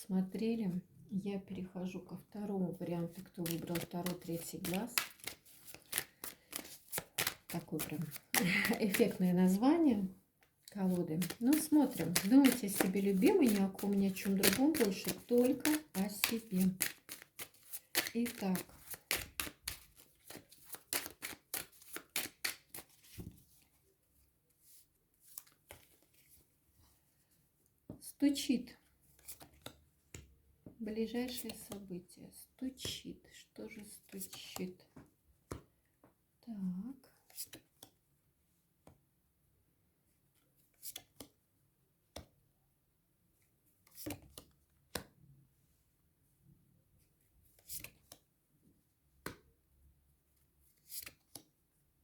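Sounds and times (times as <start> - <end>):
cards being shuffled: 3.0 - 10.0, 10.6 - 23.5, 25.2 - 26.4, 43.9 - 45.1, 47.6 - 48.2, 50.8 - 51.5.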